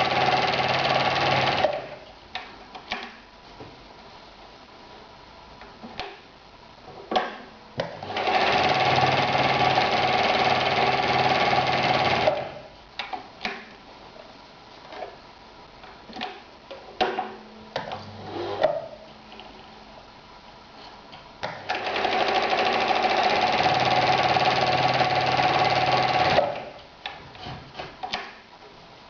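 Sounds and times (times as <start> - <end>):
sewing machine stitching leather: 0.0 - 2.0, 8.0 - 12.7, 21.5 - 26.8.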